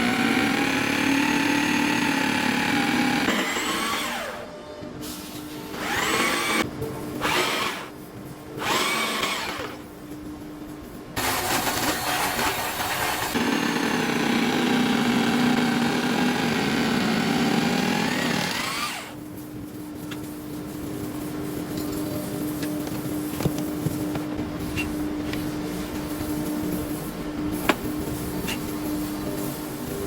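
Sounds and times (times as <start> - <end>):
jigsaw motor running: 0.0 - 4.4, 5.8 - 6.6, 8.6 - 9.7, 11.2 - 19.1.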